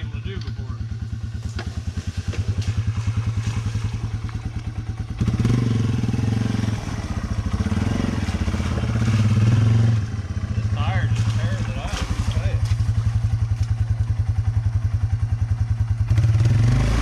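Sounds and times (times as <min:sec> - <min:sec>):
motorcycle engine pulling under load: 0:00.4 - 0:14.0.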